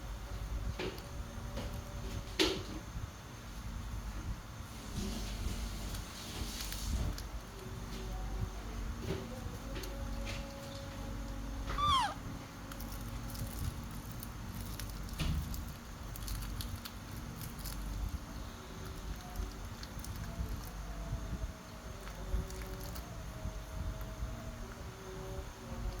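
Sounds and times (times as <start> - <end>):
faint ticks and rustles: 0.4 - 26.0
baby monkey squealing: 11.7 - 12.2.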